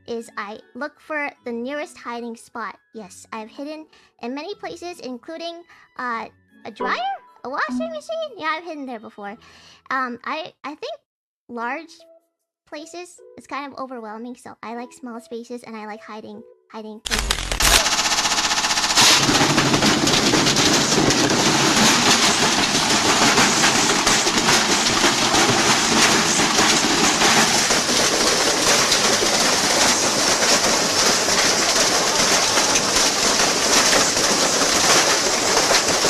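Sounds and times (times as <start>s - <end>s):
object rattling in drum: 17.1s - 36.0s
washing machine running: 17.1s - 36.0s.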